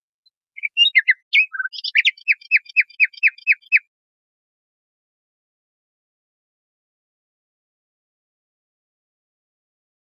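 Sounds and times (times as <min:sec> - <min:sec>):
nightingale singing: 0:00.6 - 0:03.9.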